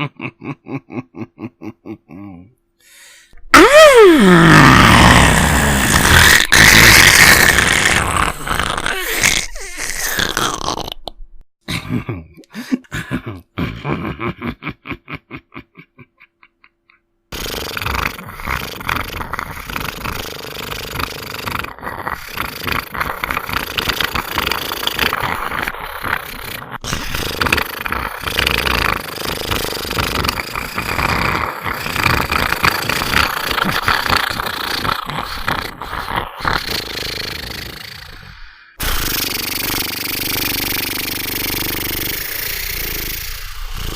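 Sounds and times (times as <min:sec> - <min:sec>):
crackling rasping growl: 0:04.2 - 0:11.0, 0:17.3 - 0:43.9.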